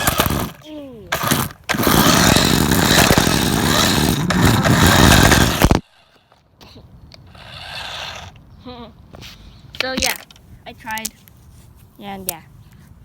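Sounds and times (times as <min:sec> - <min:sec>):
toy car rumbling and scraping: 0:00.0 - 0:08.4.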